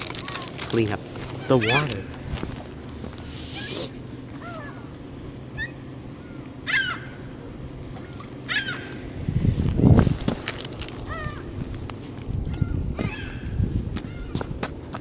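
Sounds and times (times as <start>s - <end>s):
seagulls calling: 0.0s - 9.2s, 11.0s - 11.6s, 12.4s - 14.4s.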